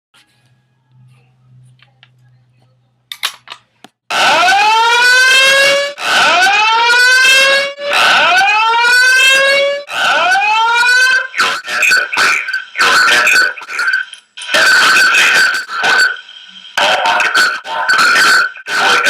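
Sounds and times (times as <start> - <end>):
fire alarm whooping tone: 4.1 - 16.2.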